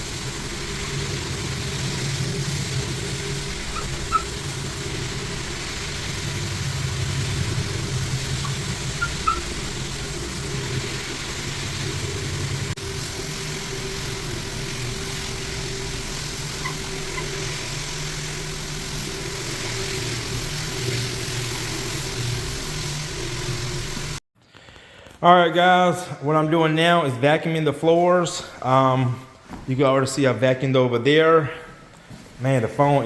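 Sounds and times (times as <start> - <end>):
electric motor humming and hissing: 0.0 - 24.2.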